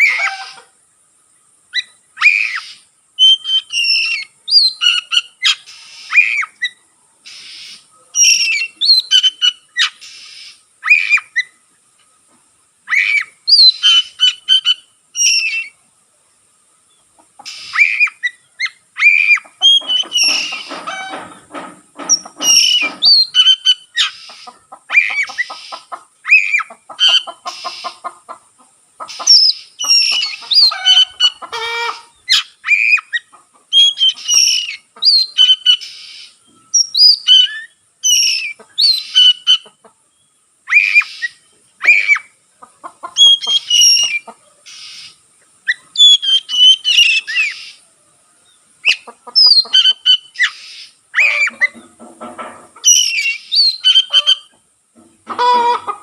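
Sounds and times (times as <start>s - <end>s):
bird singing whistled phrases: 1.8s - 11.6s, 12.9s - 15.8s, 33.8s - 39.6s, 40.7s - 42.3s, 45.7s - 47.8s, 52.9s - 54.4s
bird rattling chatter: 19.7s - 23.2s.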